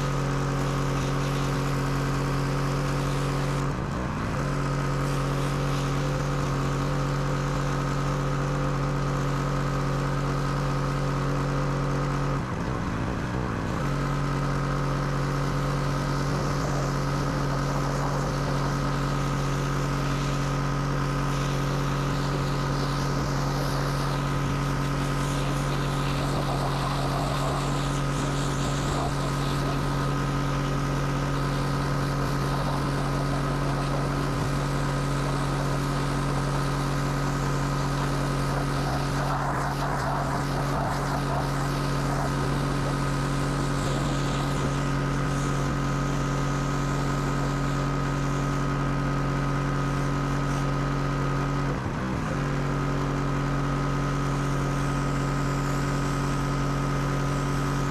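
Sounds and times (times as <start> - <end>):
pressure washer motor: 0.0 - 57.9
hiss of spray: 21.2 - 45.8.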